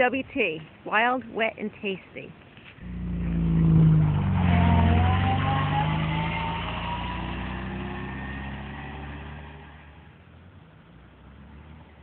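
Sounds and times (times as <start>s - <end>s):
car engine accelerating: 2.8s - 12.0s.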